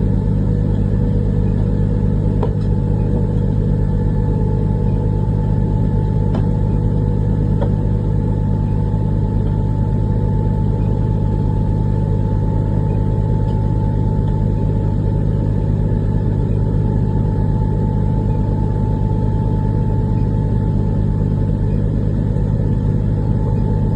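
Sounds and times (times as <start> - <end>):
diesel engine running: 0.0 - 23.9.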